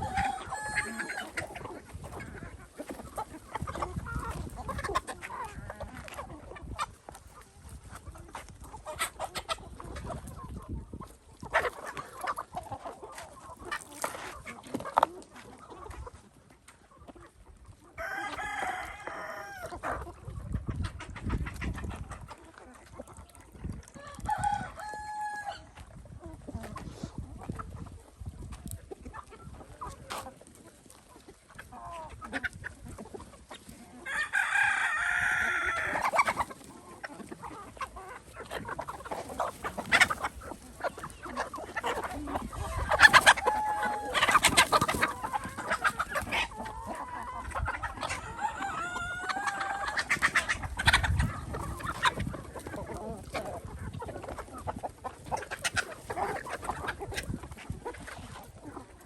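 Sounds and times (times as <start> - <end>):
rooster crowing: 0.0 - 1.2, 24.2 - 25.6
chickens clucking: 0.0 - 59.0.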